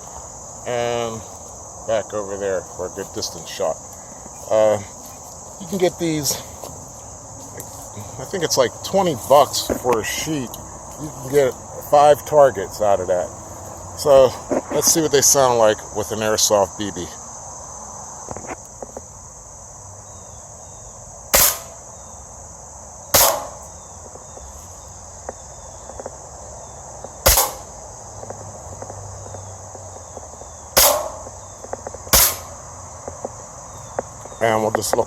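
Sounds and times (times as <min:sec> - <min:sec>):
airsoft gun shots: 0:21.3 - 0:21.8, 0:23.1 - 0:23.6, 0:27.2 - 0:27.7, 0:30.8 - 0:31.3, 0:32.1 - 0:32.6.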